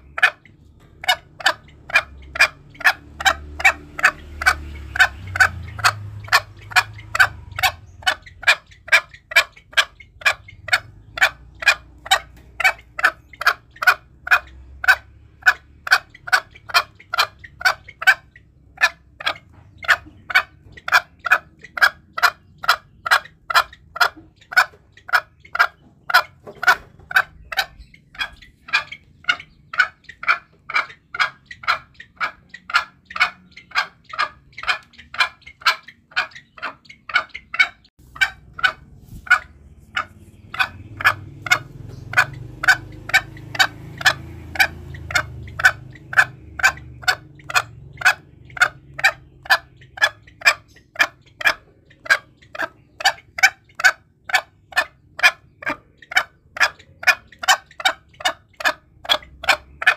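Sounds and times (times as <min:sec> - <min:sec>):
junglefowl clucking: 0:00.0 - 0:59.9.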